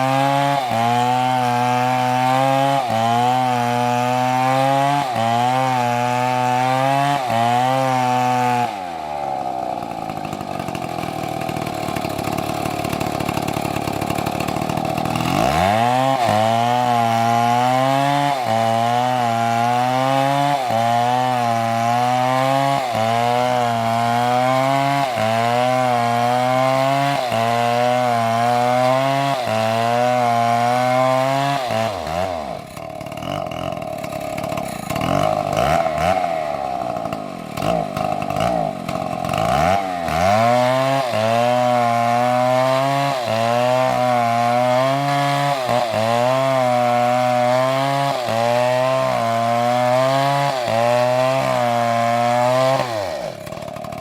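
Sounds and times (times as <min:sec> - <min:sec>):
chainsaw cutting into tree: 0:00.0 - 0:54.0.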